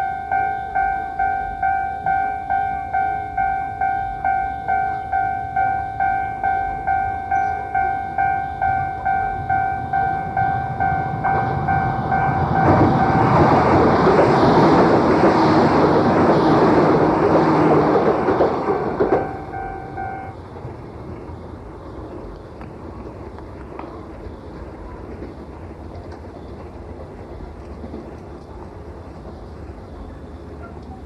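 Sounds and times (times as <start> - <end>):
level-crossing alarm ringing: 0.0 - 14.6, 17.2 - 20.4
train passing: 0.0 - 31.0.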